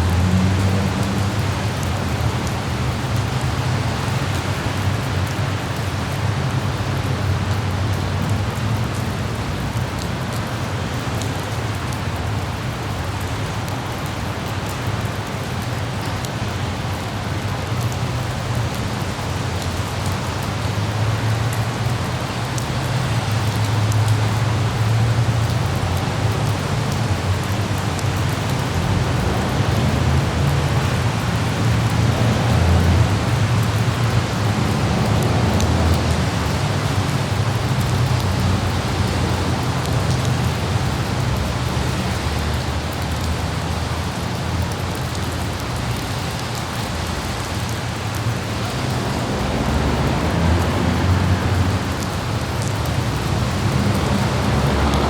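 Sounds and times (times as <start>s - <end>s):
light rain hissing: 0.0s - 55.0s
low traffic rumble: 0.0s - 55.0s
raindrops ticking: 0.0s - 55.0s.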